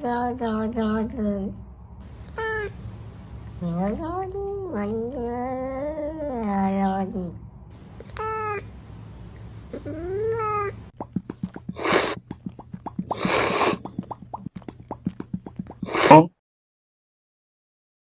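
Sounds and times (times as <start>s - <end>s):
cat meowing: 2.1s - 4.0s, 7.8s - 10.9s
cat yowl: 2.1s - 4.0s, 7.8s - 10.9s
loud hissing rushes: 2.1s - 4.0s, 7.8s - 10.9s, 13.1s - 13.8s.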